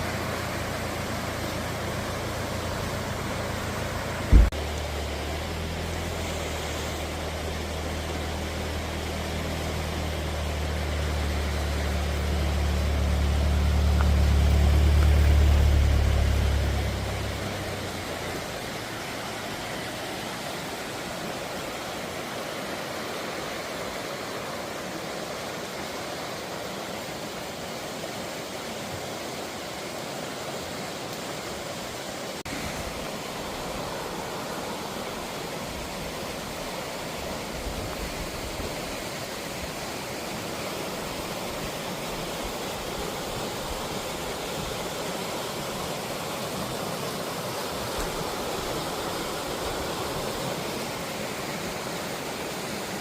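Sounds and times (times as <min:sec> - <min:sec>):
low engine-like hum: 0:00.0 - 0:22.1
flowing water rushing: 0:00.0 - 0:53.0
sharp knock: 0:04.3 - 0:04.6.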